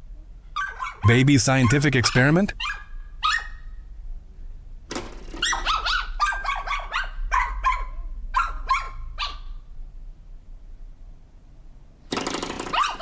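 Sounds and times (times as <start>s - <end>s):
dog yipping: 0.6s - 3.8s, 5.3s - 9.6s, 12.6s - 13.0s.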